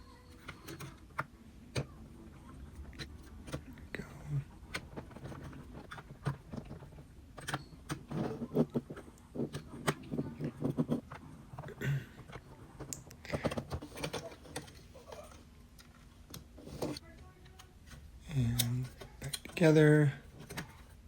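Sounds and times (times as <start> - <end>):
plastic parts clicking: 0.3 - 2.0, 4.6 - 19.6.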